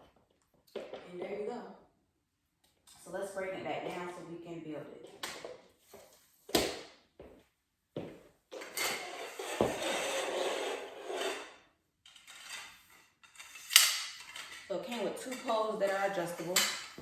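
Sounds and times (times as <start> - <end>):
metal tube sliding scrape: 8.8 - 14.7.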